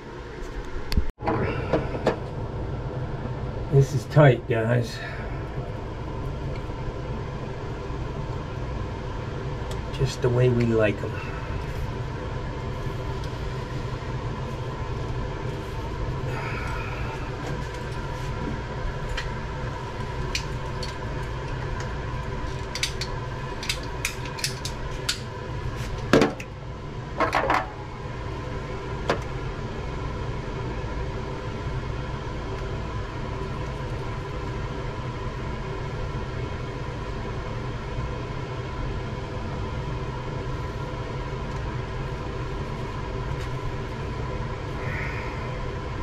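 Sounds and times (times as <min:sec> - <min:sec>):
mechanical hum: 0:00.0 - 0:46.0.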